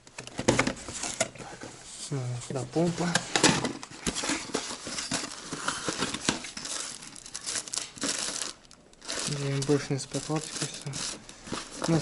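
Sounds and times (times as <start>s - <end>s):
plastic packaging crinkling: 2.5s - 12.0s.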